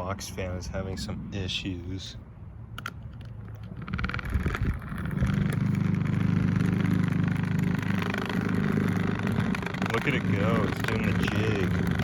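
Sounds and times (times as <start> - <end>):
box fan rattling: 3.2 - 12.0.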